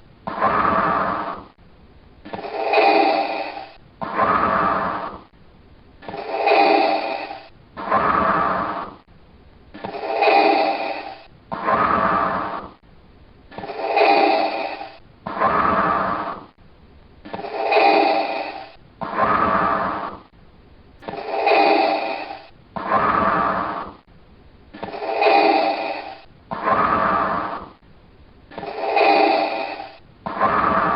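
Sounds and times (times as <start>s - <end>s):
mechanical respirator breathing: 2.3s - 5.3s, 6.0s - 9.0s, 9.8s - 12.8s, 13.5s - 16.6s, 17.3s - 20.3s, 21.0s - 24.0s, 24.8s - 27.8s, 28.5s - 30.9s.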